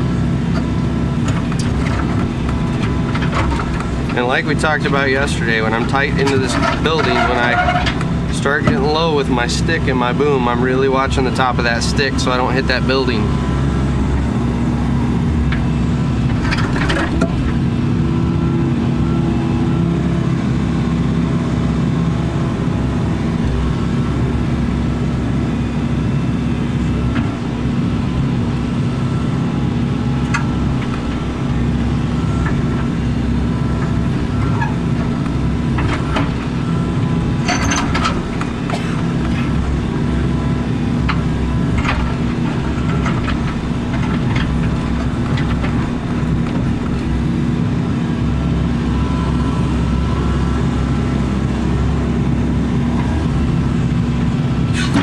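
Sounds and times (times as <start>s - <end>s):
excavator diesel engine running: 0.0s - 55.0s
metal clanks and scrapes: 1.3s - 8.8s, 37.4s - 39.6s.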